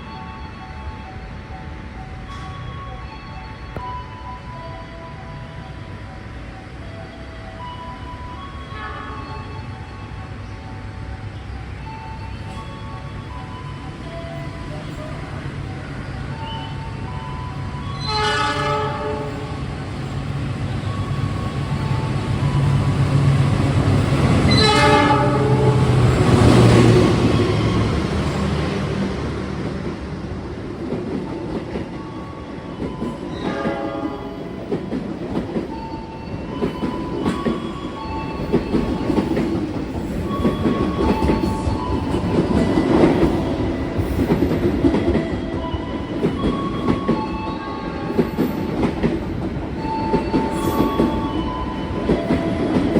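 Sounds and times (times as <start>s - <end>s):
train rumble: 0.0s - 52.9s
train horn: 8.7s - 9.5s, 18.0s - 19.6s, 24.4s - 26.7s, 33.3s - 34.4s.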